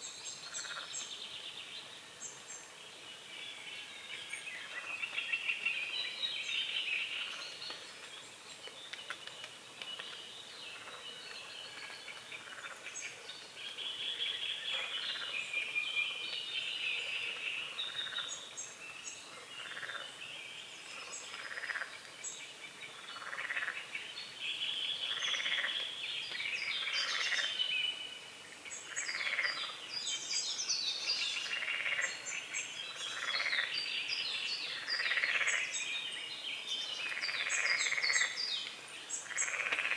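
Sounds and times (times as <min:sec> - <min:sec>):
birds singing and chirping: 0:00.0 - 0:39.9
frogs croaking: 0:00.4 - 0:01.0, 0:10.7 - 0:13.3, 0:14.6 - 0:16.2, 0:17.0 - 0:18.6, 0:19.2 - 0:20.2, 0:20.9 - 0:22.1, 0:22.8 - 0:24.1, 0:25.0 - 0:25.9, 0:26.5 - 0:27.7, 0:28.7 - 0:29.9, 0:31.0 - 0:33.9, 0:34.7 - 0:35.9, 0:37.0 - 0:38.5, 0:39.1 - 0:39.9.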